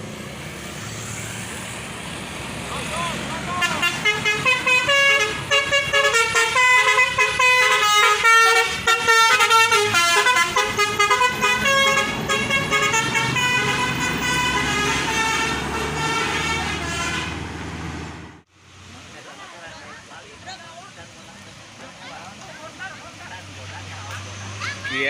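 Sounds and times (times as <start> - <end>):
musical bus horn melody: 3.5 - 17.5.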